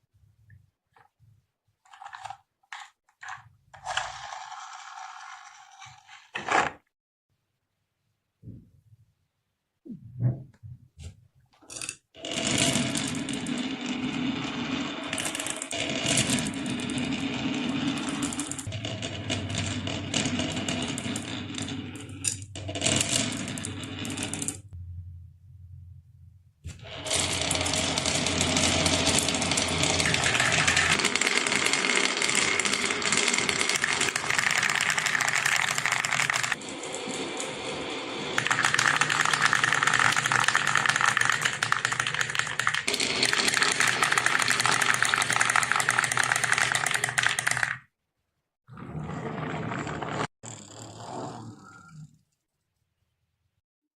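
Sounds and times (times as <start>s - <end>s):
marbles clattering down track: 3.2s - 6.0s, 11.7s - 24.6s, 27.0s - 47.8s.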